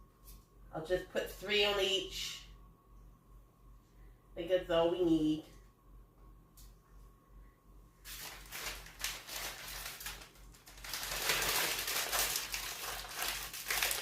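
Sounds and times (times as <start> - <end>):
food packaging crinkling: 8.1 - 14.0.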